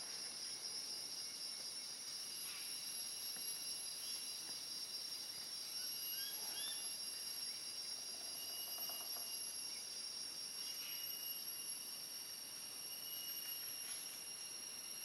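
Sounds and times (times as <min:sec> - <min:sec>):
shrill insect drone: 0:00.0 - 0:15.0.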